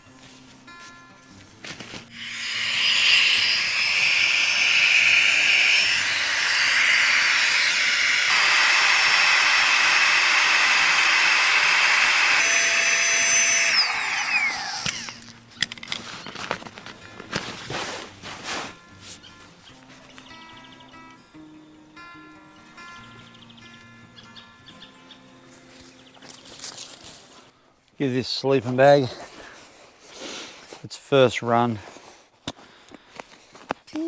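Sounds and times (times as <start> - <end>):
small electric motor whining: 2.1 - 15.3.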